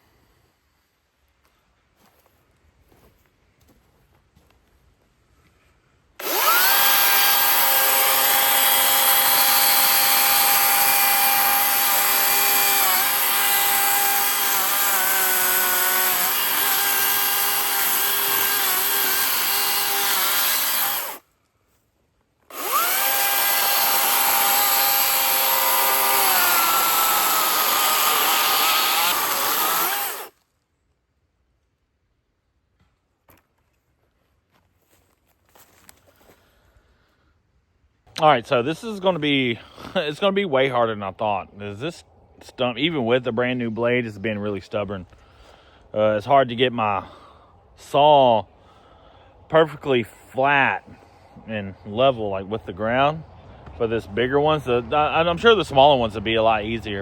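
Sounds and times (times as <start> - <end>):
chainsaw cutting wood: 6.2 - 21.3, 22.5 - 30.4.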